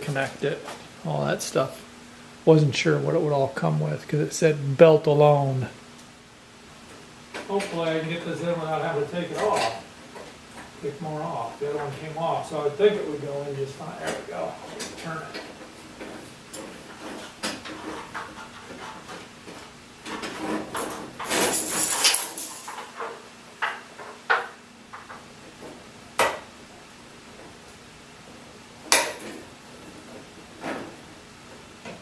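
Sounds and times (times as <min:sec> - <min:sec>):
metal parts and belt clinking: 0:20.7 - 0:23.0.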